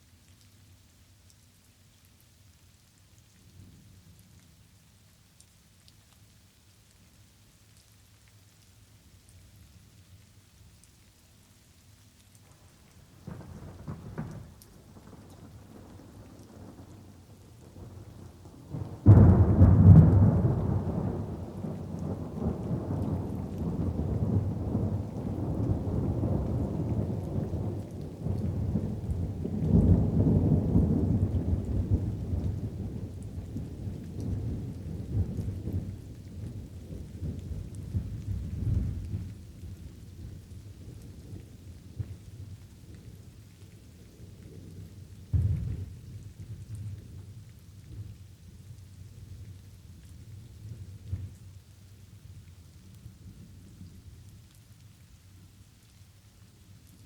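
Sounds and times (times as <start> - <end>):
light rain falling: 0.0 - 57.0
rolling thunder: 13.2 - 39.7, 45.3 - 47.3.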